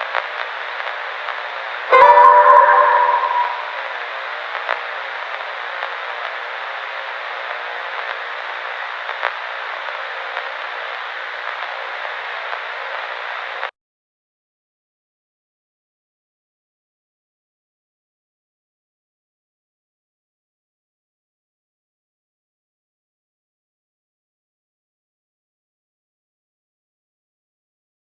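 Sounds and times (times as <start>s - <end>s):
loud tone: 1.9s - 4.0s.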